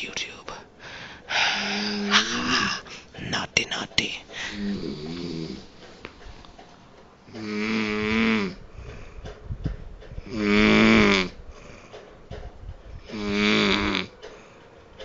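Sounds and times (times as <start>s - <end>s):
quiet breathing: 0.0s - 6.8s, 7.4s - 9.4s, 10.2s - 15.0s
man snoring: 1.6s - 2.8s, 4.4s - 5.7s, 7.4s - 8.6s, 10.3s - 11.9s, 13.1s - 14.1s.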